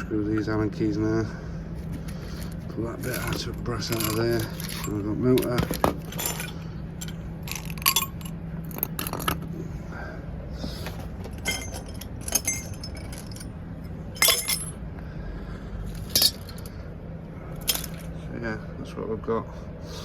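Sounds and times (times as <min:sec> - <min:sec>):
steady low hum: 0:00.0 - 0:20.0
scrap metal parts clinking: 0:01.9 - 0:09.5, 0:10.9 - 0:14.8, 0:15.9 - 0:16.8, 0:17.5 - 0:18.2.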